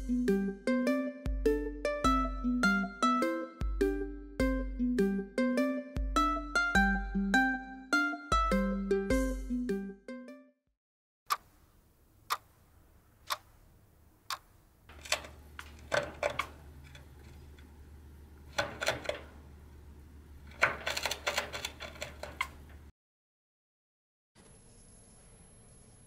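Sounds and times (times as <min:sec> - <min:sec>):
faint low hum: 0:11.6 - 0:22.9.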